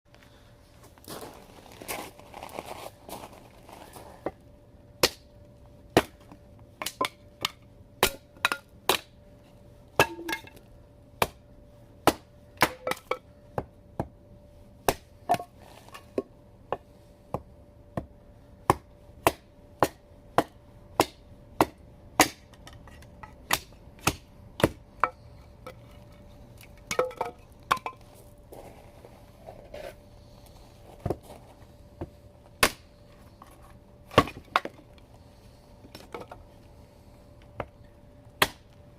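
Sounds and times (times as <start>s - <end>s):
axe chopping firewood: 5.0s - 5.3s, 5.9s - 9.2s, 10.0s - 10.6s, 11.2s - 11.4s, 12.0s - 14.2s, 14.8s - 25.8s, 32.0s - 32.9s, 34.1s - 34.8s, 38.4s - 38.8s.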